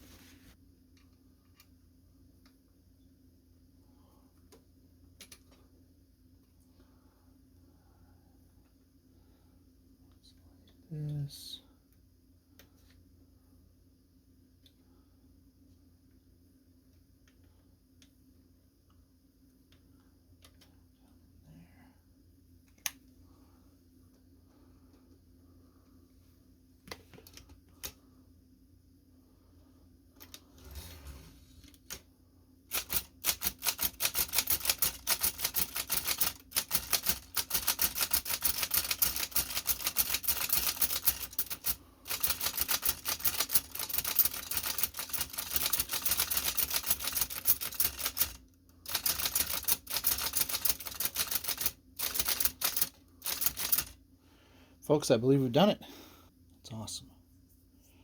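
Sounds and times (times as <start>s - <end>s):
typewriter keystrokes: 32.7s - 54.0s.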